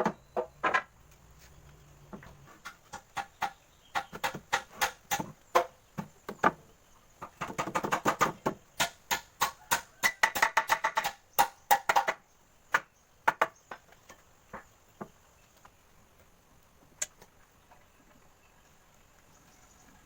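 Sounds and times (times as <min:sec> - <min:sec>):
rapid sharp knocks: 0:02.6 - 0:06.6, 0:07.2 - 0:13.8.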